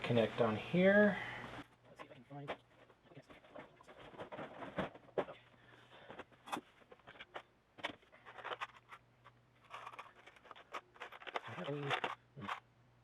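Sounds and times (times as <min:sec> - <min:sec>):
small hard parts rattling: 0:02.4 - 0:12.6.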